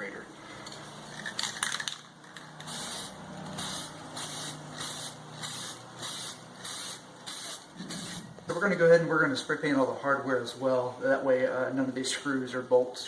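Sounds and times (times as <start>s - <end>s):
spray paint can hissing: 2.6s - 8.4s.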